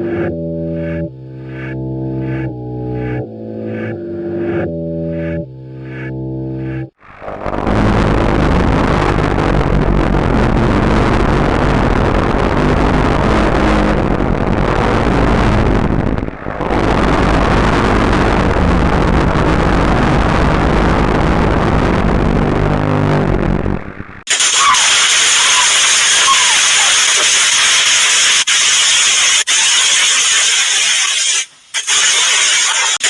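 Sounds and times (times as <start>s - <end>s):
low hum: 0.0s - 24.3s
loud harsh rushing noise: 7.0s - 29.6s.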